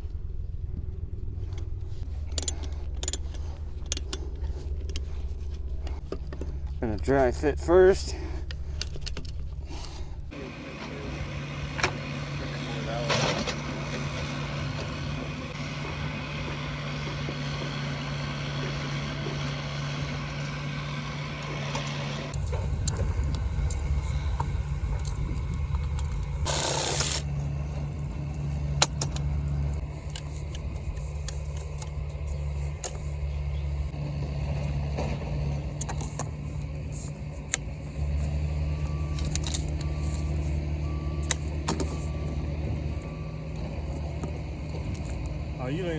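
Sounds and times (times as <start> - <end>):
light clicks and knocks: 0.0 - 10.3
diesel engine rumbling: 0.0 - 45.9.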